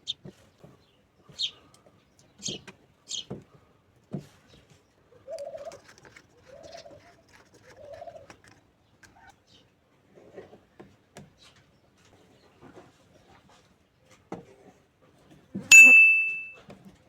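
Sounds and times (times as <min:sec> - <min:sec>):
dove cooing: 0:05.1 - 0:09.3.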